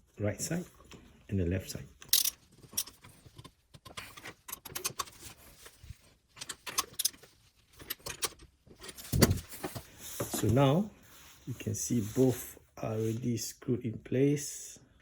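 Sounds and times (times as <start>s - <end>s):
metal tools clinking: 2.0s - 3.0s, 6.4s - 9.4s.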